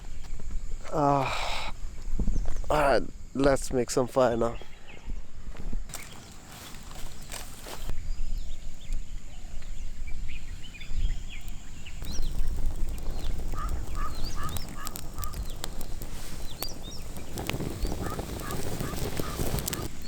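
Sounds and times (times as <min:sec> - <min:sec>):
birds chirping: 0:01.2 - 0:20.0
sharp clicks: 0:12.0 - 0:20.0.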